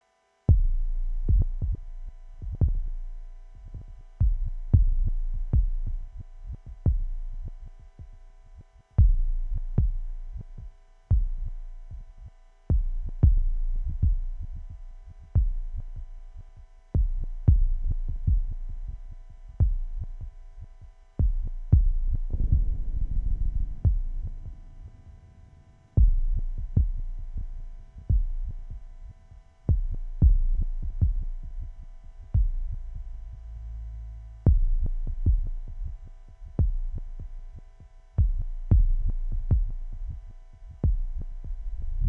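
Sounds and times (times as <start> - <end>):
dark ambient synthesizer music: 9.2 - 42.0.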